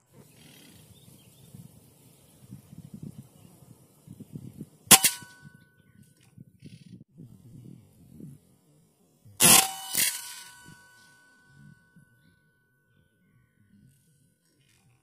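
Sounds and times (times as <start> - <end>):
faint low rumble: 0.0 - 9.4
brief metallic ring: 4.9 - 5.8, 9.4 - 12.1
air rifle shot: 9.4 - 11.1.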